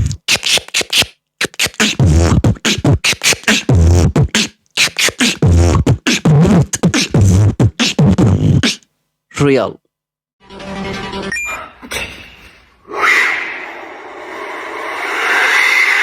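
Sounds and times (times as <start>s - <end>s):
beatboxer imitating frog croaks: 0.0s - 8.9s.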